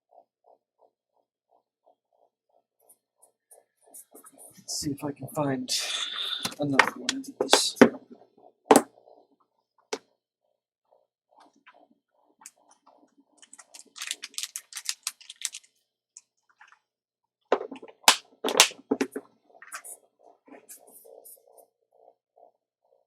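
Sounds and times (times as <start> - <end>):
packaging crinkling: 13.4 - 15.7.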